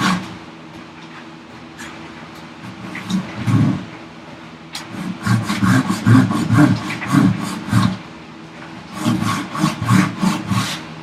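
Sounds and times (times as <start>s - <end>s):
handsaw cutting wood: 0.0s - 0.4s, 2.8s - 3.9s, 4.8s - 8.0s, 8.8s - 10.9s.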